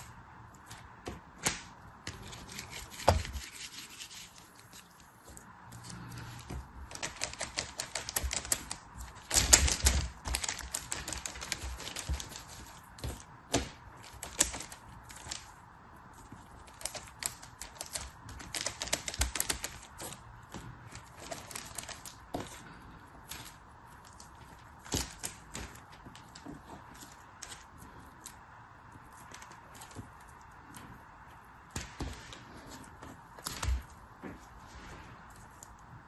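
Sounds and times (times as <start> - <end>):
packaging crackling: 20.9 - 28.2.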